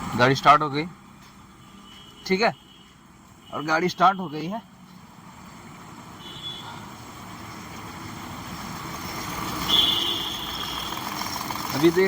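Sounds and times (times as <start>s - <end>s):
car engine idling: 6.9s - 12.0s.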